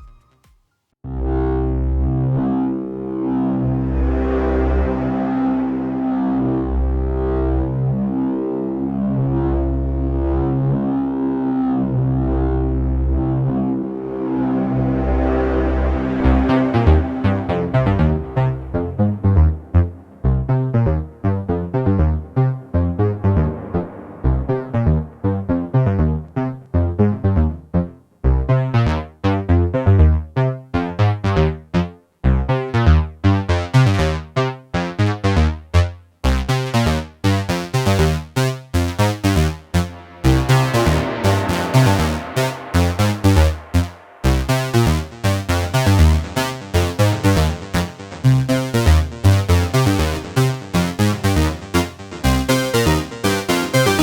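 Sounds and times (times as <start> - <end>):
synthesizer sequenced pattern: 15.9 - 23.6, 37.6 - 54.0.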